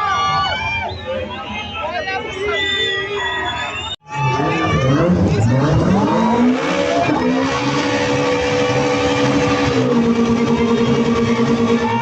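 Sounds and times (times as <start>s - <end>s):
race car engine at high revs: 4.2s - 12.0s.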